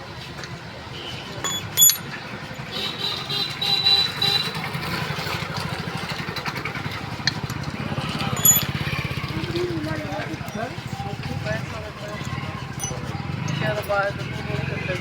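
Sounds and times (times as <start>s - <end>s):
ringing metal tones: 1.4s - 2.1s, 8.3s - 9.0s, 12.6s - 13.9s
spanner clinking on metal: 1.4s - 2.2s, 7.2s - 9.1s, 12.1s - 14.0s
tool rattling on housing: 1.4s - 2.2s, 7.1s - 9.1s, 12.1s - 13.9s.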